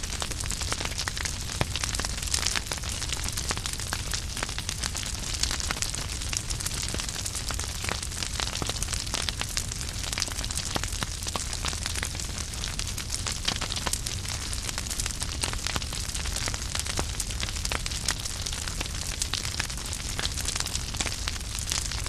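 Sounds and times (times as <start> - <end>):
fire rumbling and hissing: 0.0 - 22.0
wood crackling and popping: 0.0 - 22.0.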